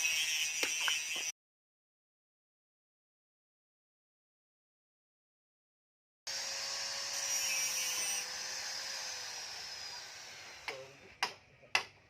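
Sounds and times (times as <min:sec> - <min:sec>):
power tool whine winding down: 0:06.3 - 0:10.7.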